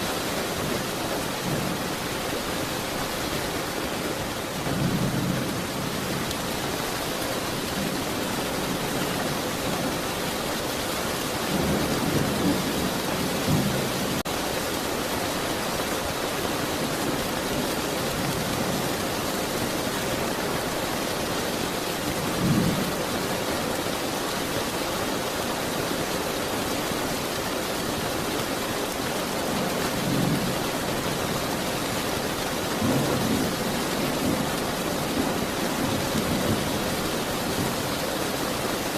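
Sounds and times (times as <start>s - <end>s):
heavy rain: 0.0s - 38.9s.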